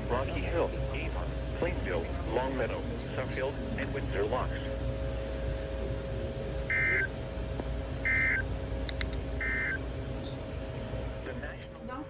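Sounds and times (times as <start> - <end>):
steady radio hum: 0.0 - 10.0, 10.7 - 12.0
electronic data bursts: 6.7 - 7.1, 8.0 - 8.4, 9.4 - 9.8.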